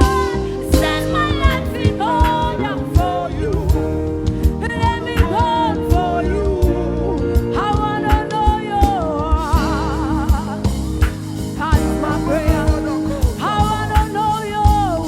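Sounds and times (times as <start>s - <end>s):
gospel singing: 0.0s - 15.0s
steady drum beat: 0.0s - 15.0s.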